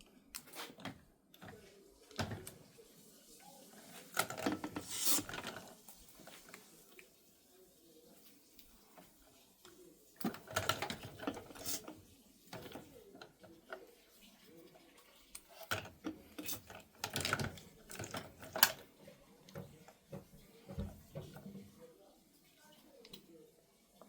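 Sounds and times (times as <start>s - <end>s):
plastic parts clicking and rattling: 4.1s - 6.5s, 10.2s - 13.8s, 15.6s - 18.8s.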